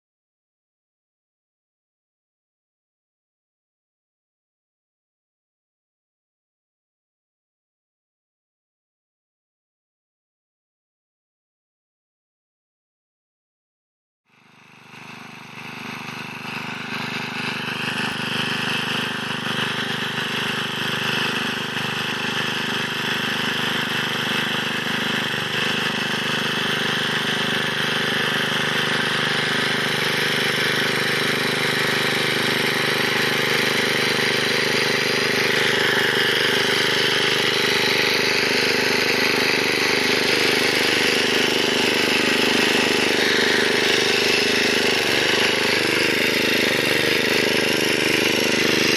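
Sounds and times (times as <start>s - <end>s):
rotary tiller working soil: 14.3s - 48.9s
tractor engine running: 14.5s - 48.9s.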